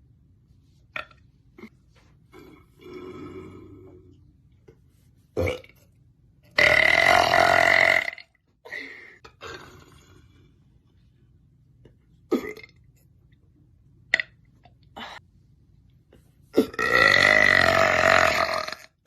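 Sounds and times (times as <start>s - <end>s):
woman burping: 12.3s - 12.8s, 16.5s - 19.0s.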